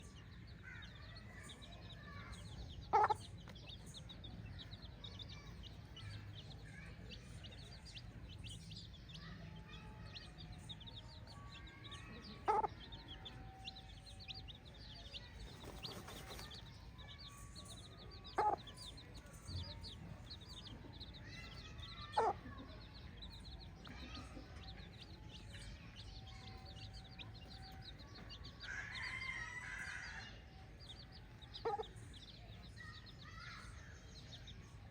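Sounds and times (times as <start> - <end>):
chickens calling: 2.7 - 4.4, 10.8 - 19.3, 19.9 - 33.7.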